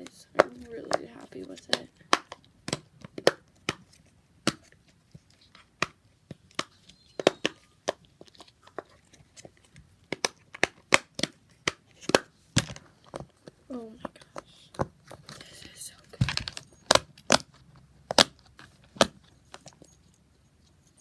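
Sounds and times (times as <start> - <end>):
fidget toys clicking and popping: 0.0 - 4.7, 5.8 - 8.0, 10.1 - 12.8.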